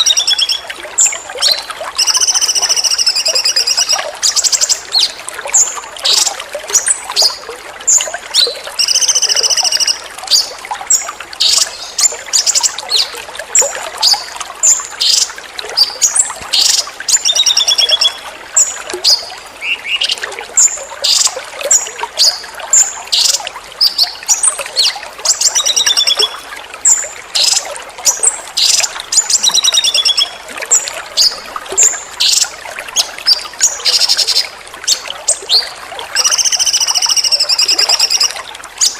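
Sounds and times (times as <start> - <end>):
songbird singing trills: 0.0 - 6.3, 7.2 - 13.1, 14.0 - 18.2, 22.2 - 30.4, 33.3 - 38.9
trickle of running water: 0.0 - 38.9.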